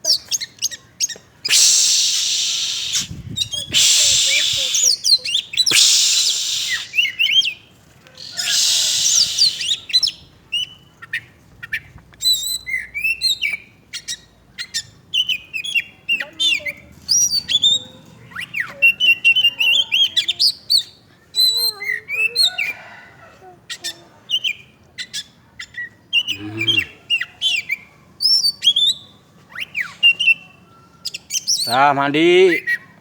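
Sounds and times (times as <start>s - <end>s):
bird singing whistles and trills: 0.1s - 7.6s, 8.2s - 10.8s, 11.7s - 17.8s, 24.3s - 31.8s
bird harsh hissing bursts: 1.5s - 7.2s, 8.2s - 10.0s.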